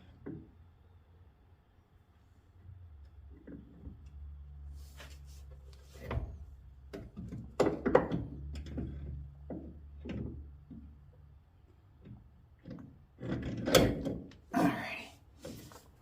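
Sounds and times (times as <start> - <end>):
metal clunks and knocks: 6.0 - 10.9, 12.0 - 14.4.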